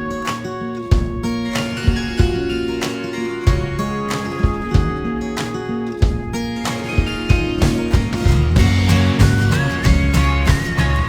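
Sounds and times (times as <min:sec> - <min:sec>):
upbeat music with guitar and drums: 0:00.0 - 0:11.0.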